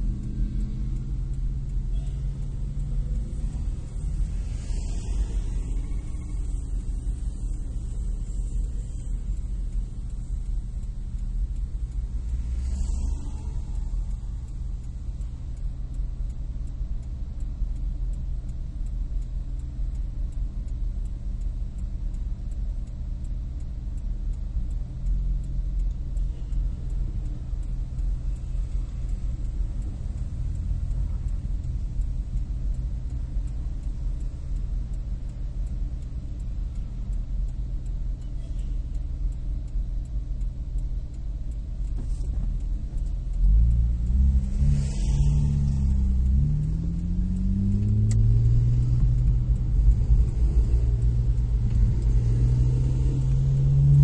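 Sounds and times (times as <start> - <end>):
engine revving: 0.0 - 9.8, 11.1 - 14.8, 41.9 - 54.0
car engine idling: 0.0 - 54.0.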